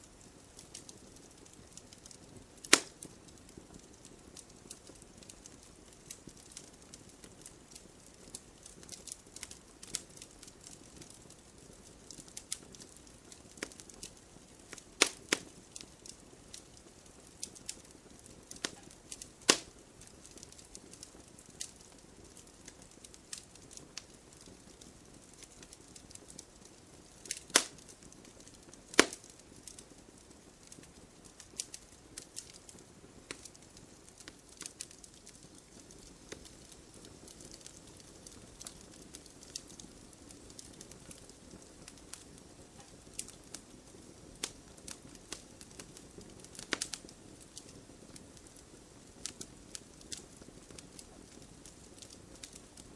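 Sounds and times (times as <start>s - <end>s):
soft low hiss: 0.0s - 52.9s
wood fire crackling: 0.0s - 52.9s
sharp pops and snaps: 2.6s - 3.2s, 12.1s - 21.7s, 27.2s - 29.8s, 30.7s - 39.8s, 44.4s - 47.8s.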